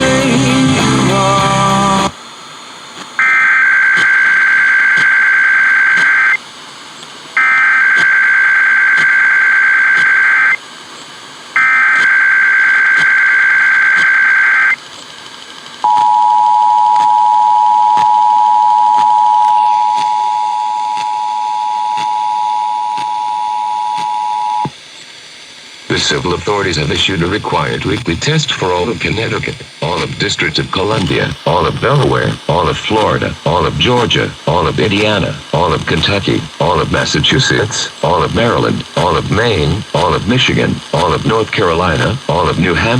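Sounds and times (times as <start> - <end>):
radio program audio: 2.8 - 6.4, 7.3 - 24.8, 25.8 - 42.9
screeching digital header bursts: 3.2 - 6.4, 7.4 - 10.6, 11.6 - 14.8
two-tone attention signal: 15.9 - 24.7.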